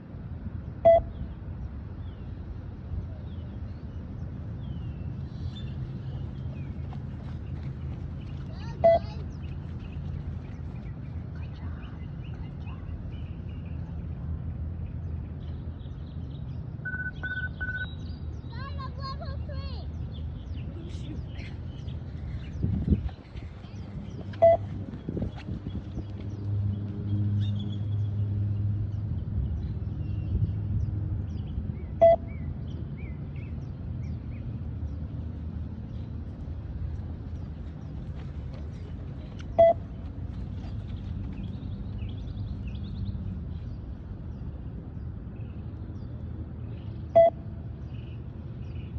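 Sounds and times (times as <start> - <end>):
steady low rumble: 19.2 - 48.9
faint bird chirps: 21.2 - 24.7.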